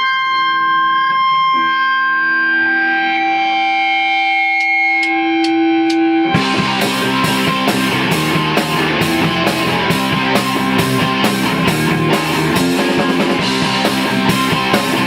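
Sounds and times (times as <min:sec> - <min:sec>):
distorted electric guitar: 0:00.0 - 0:15.0
rock band with drums: 0:04.6 - 0:15.0.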